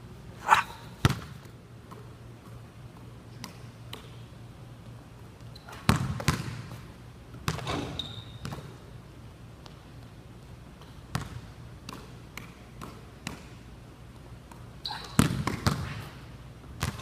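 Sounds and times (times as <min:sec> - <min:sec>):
basketball bouncing on court: 0:01.0 - 0:02.1, 0:05.7 - 0:06.8, 0:07.4 - 0:08.8, 0:10.8 - 0:13.5, 0:14.5 - 0:16.1, 0:16.7 - 0:17.0.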